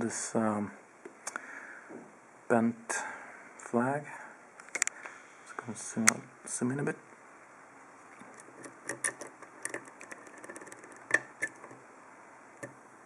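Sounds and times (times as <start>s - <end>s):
lock pick clicking and scraping: 8.2s - 11.9s.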